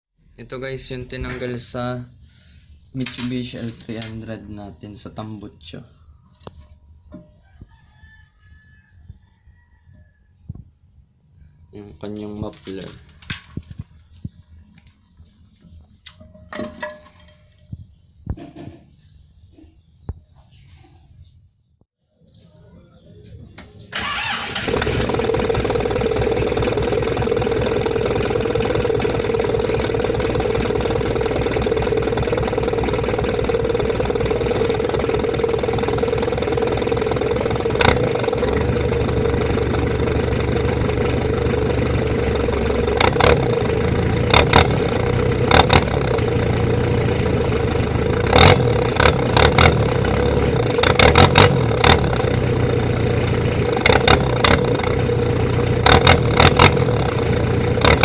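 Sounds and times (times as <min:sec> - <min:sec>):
diesel engine idling: 0:23.4 - 0:58.0
loud sharp exhaust bursts: 0:23.9 - 0:58.0.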